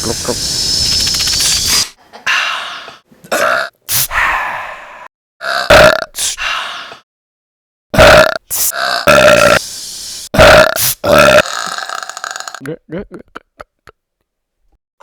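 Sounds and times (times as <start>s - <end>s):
hissy bursts: 0.0s - 2.0s, 9.4s - 11.0s.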